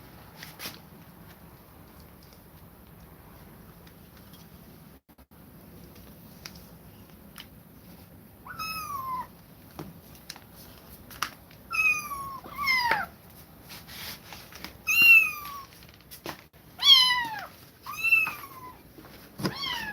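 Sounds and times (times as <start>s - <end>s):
kittens meowing: 8.5s - 9.3s, 11.7s - 13.1s, 14.9s - 15.7s, 16.8s - 18.8s.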